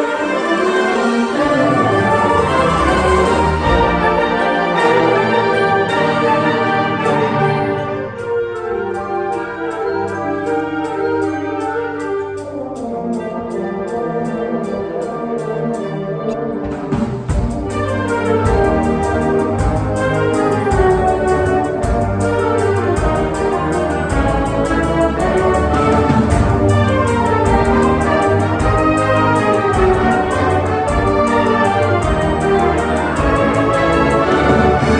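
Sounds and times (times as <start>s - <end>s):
band brass chords: 0.0s - 34.9s
high ticking percussion: 0.0s - 34.9s
sharp percussion hits: 16.6s - 34.9s.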